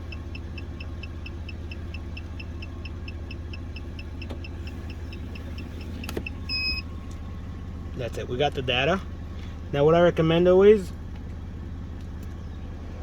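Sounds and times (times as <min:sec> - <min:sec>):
short high beeps: 0:06.5 - 0:06.8.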